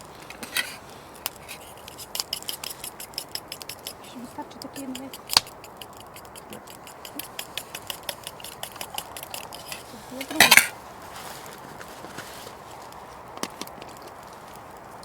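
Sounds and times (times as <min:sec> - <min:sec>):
scraping clatter: 0:00.0 - 0:12.6
metal utensil clicking on a dish: 0:01.8 - 0:10.7.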